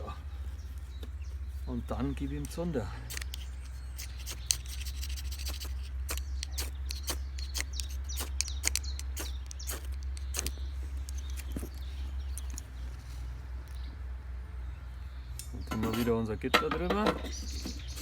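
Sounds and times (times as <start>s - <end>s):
fire crackling and snapping: 2.4s - 12.4s.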